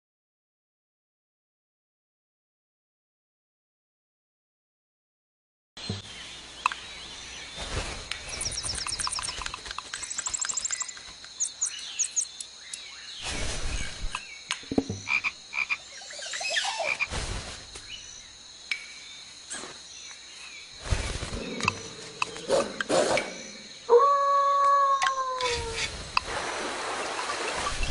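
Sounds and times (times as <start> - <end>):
frogs croaking: 8.2 - 13.2, 13.9 - 17.1, 18.0 - 27.7.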